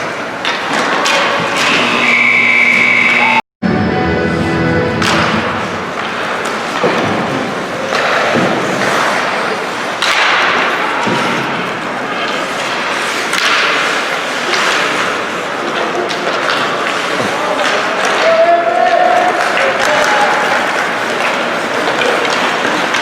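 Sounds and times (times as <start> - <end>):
skates scraping ice: 5.0 - 23.0.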